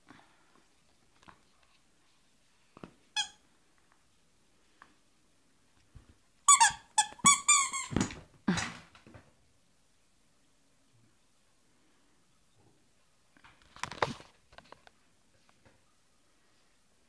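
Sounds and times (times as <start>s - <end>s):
squeaky toy squeaking: 3.2s - 3.4s, 6.5s - 8.0s.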